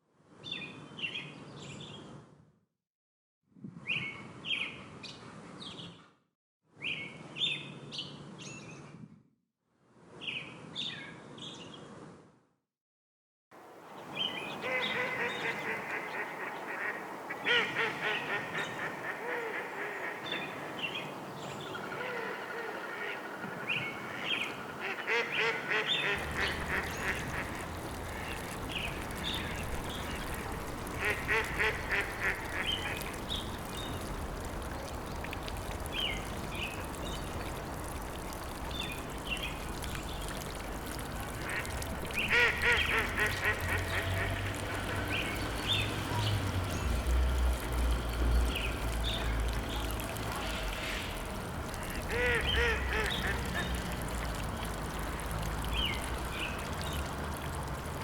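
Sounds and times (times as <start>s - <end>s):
birds chattering calls: 14.0s - 47.1s, 51.8s - 53.9s.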